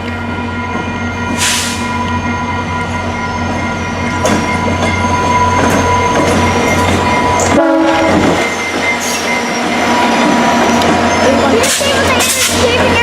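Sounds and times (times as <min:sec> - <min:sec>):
train wheels clattering over rails: 0:04.1 - 0:13.0
train horn note: 0:07.4 - 0:08.4.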